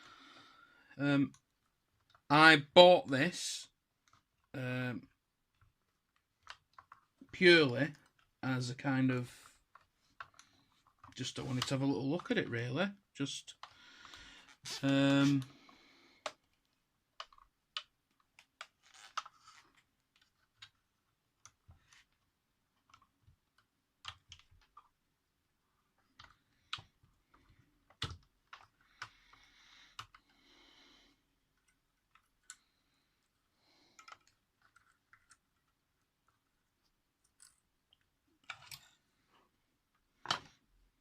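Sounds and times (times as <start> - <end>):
plastic parts clicking and knocking: 4.0 - 8.4, 9.2 - 12.7, 13.5 - 25.1, 25.9 - 30.5, 31.4 - 39.0, 39.9 - 40.7.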